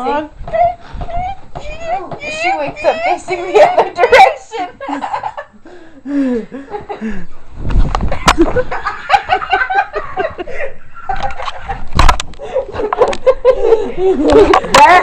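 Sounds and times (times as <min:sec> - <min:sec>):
women giggling and laughing: 0:02.3 - 0:07.3, 0:08.1 - 0:15.0.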